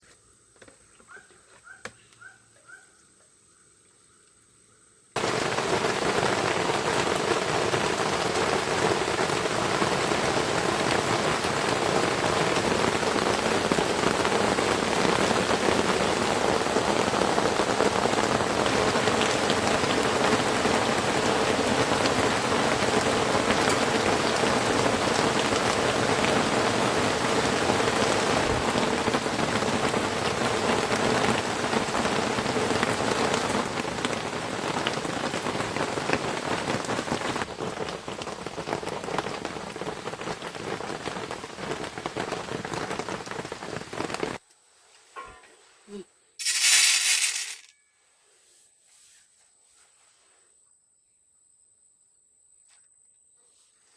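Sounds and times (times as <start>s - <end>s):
heavy rain pouring: 5.2s - 44.4s.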